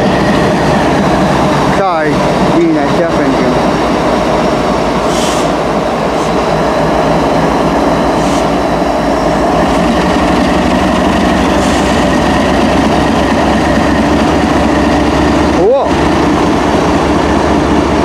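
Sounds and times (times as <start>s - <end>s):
train wheels rumbling on rails: 0.0s - 18.0s.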